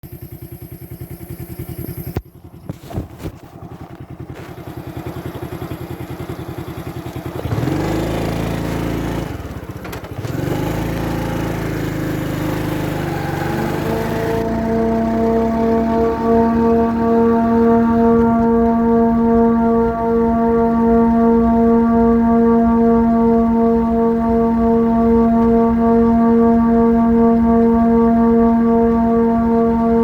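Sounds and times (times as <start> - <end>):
engine chugging: 0.0 - 30.0
train horn blasts: 10.3 - 30.0
higher chord of horn tones: 10.4 - 30.0.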